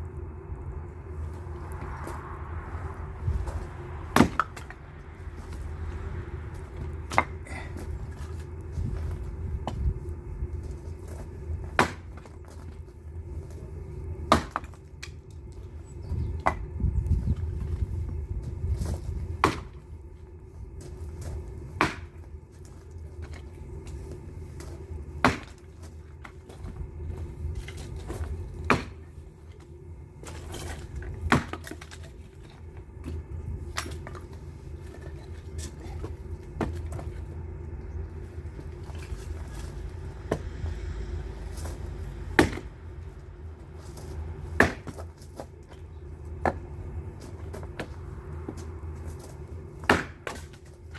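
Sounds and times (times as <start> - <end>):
low hum: 0.0 - 49.9
axe chopping wood: 4.1 - 4.8, 11.7 - 12.4, 14.3 - 14.8, 19.4 - 19.8, 21.8 - 22.3, 25.2 - 25.6, 28.7 - 29.0, 31.3 - 32.0, 42.4 - 42.7, 44.5 - 45.2, 49.8 - 50.6.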